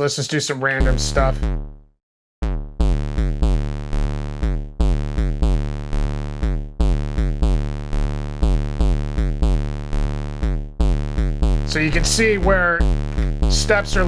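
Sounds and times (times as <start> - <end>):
deep synth bass: 0.8 - 14.0
synthesizer sequenced loop: 11.6 - 14.0.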